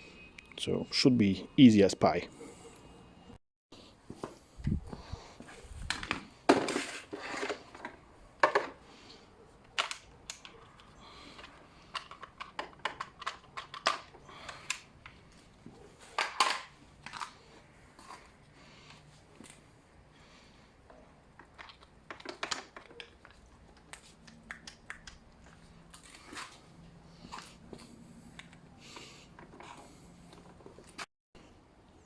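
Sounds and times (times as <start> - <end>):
plastic and metal parts clicking: 9.6 - 15.2, 16.2 - 17.4, 21.4 - 26.5.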